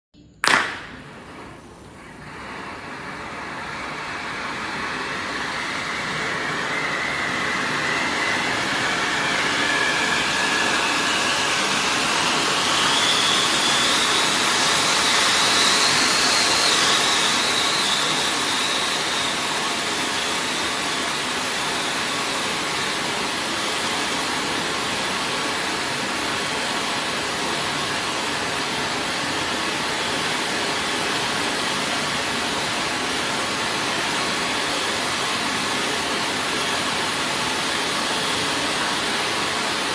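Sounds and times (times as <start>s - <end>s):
fireworks fountain hissing: 0.4s - 39.9s
faint whistle: 5.5s - 21.3s.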